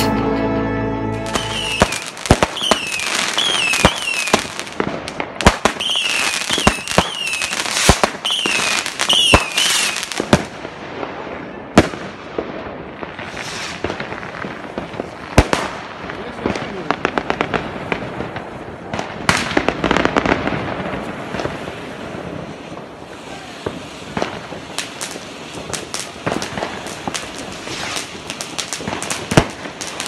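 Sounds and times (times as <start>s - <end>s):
firecrackers crackling: 1.2s - 30.0s
fireworks banging: 1.2s - 30.0s
short falling whistles: 1.4s - 2.0s.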